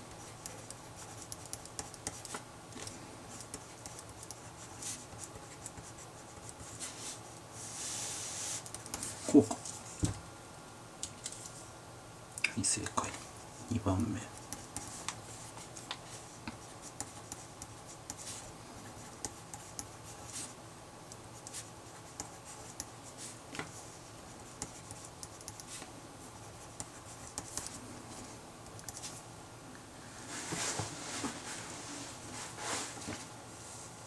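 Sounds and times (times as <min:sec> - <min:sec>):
pen scratching on paper: 0:24.3 - 0:25.8.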